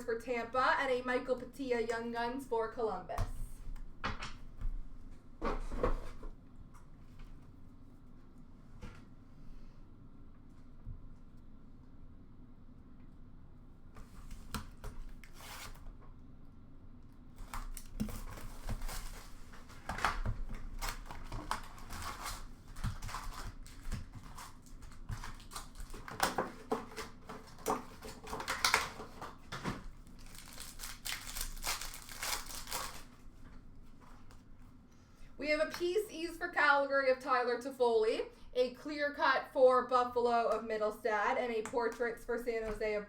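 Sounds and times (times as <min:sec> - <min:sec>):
card wrappers crinkling and tearing: 0:17.4 - 0:33.3.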